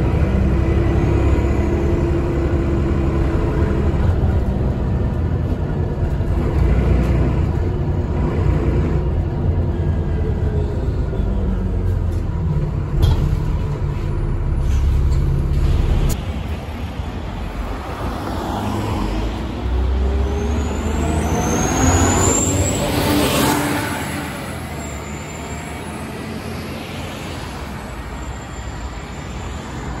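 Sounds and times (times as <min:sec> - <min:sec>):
bus diesel engine running: 0:00.0 - 0:18.2.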